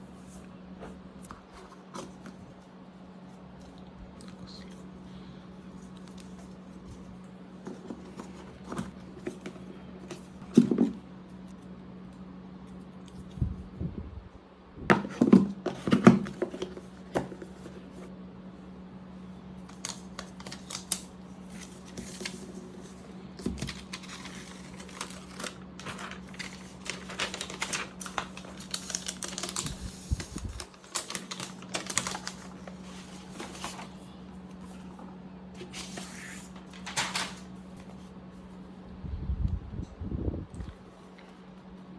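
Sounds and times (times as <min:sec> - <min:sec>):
steady low hum: 0:00.0 - 0:41.9
packaging rustling: 0:19.7 - 0:34.8, 0:35.6 - 0:37.5.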